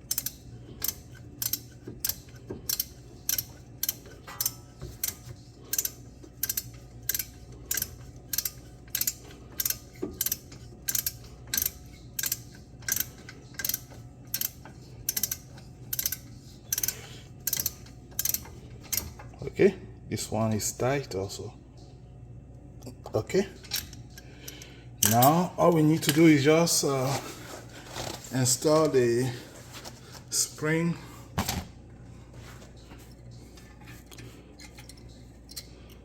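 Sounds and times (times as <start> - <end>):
ratchet wrench clicking: 0.0 - 19.2
low steady hum: 0.0 - 36.0.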